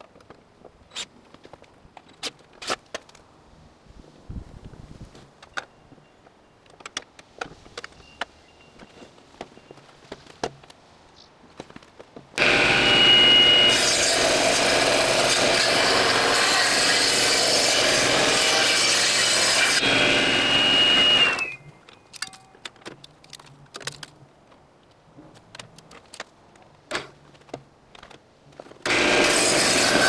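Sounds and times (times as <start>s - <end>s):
table saw ripping through log: 12.4s - 21.6s, 28.8s - 30.0s.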